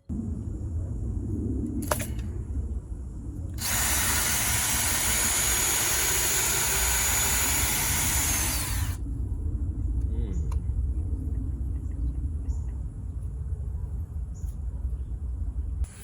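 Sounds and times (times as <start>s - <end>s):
low rumble: 0.0s - 16.0s
power drill running: 3.6s - 9.0s.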